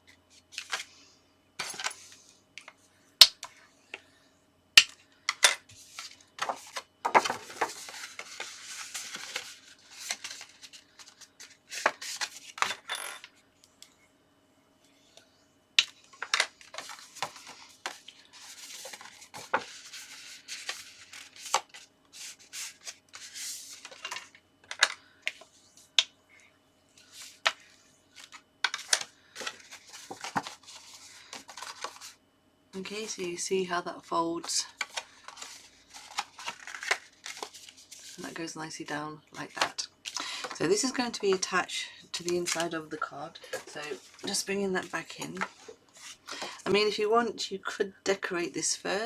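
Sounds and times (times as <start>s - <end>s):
card being folded and creased: 34.8s - 38.2s.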